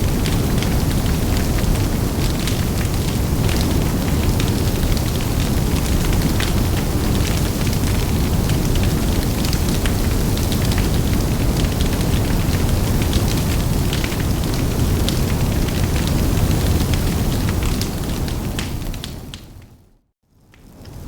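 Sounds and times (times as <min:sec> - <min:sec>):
large fire rumbling and crackling: 0:00.0 - 0:21.0.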